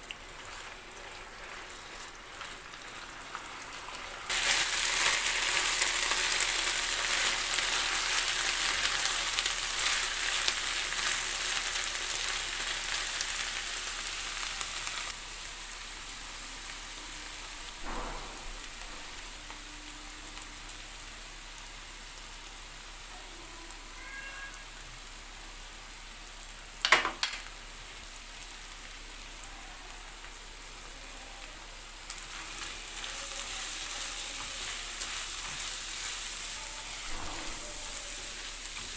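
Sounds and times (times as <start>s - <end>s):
food sizzling in hot oil: 0.0s - 38.9s
short sharp knock: 17.8s - 19.2s.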